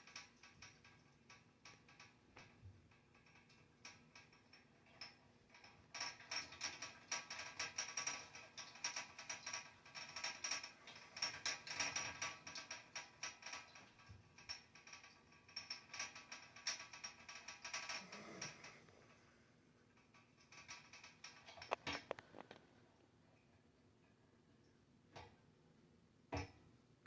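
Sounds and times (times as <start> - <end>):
heater ticking and knocking: 0.0 - 19.1.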